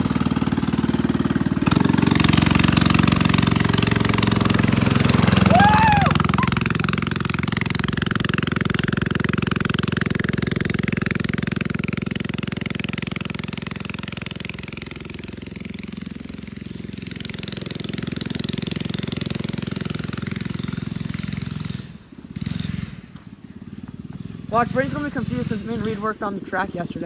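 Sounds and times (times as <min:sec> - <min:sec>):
mini bike engine chugging: 0:00.0 - 0:27.0.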